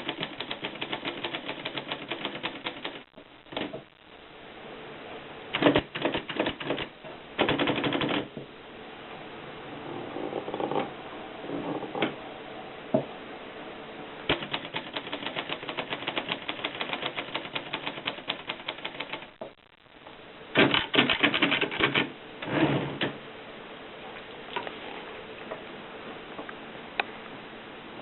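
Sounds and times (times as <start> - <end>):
typewriter key strikes: 5.6 - 8.3, 14.3 - 19.2, 20.6 - 22.1.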